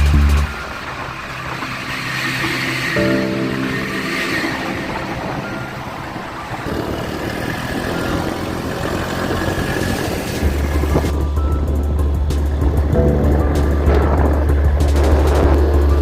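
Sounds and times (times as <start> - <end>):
motorbike engine and road noise: 0.0 - 16.0
wind on microphone: 3.0 - 16.0
deep steady bass note: 10.4 - 16.0.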